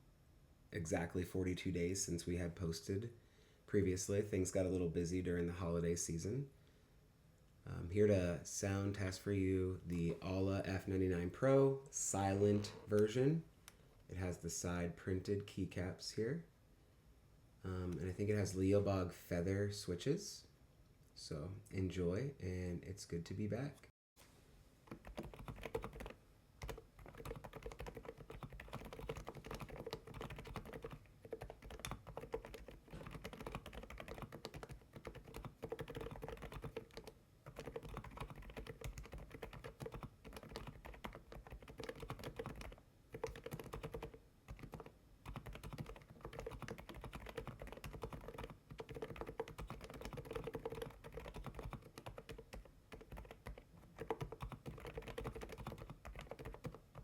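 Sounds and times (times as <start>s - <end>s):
soft keyboard typing: 24.8s - 57.0s.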